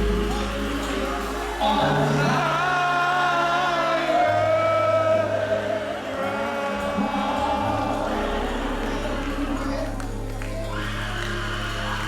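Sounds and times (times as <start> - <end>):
low bass notes: 0.0 - 12.0
voices singing long notes: 0.0 - 12.0.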